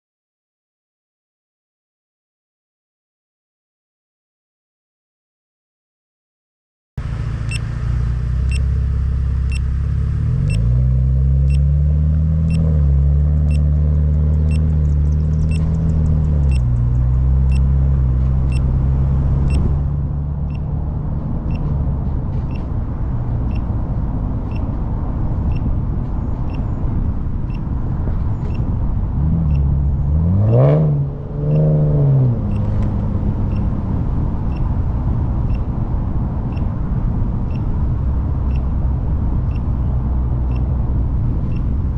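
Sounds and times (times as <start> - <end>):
car engine accelerating: 7.0 - 41.9.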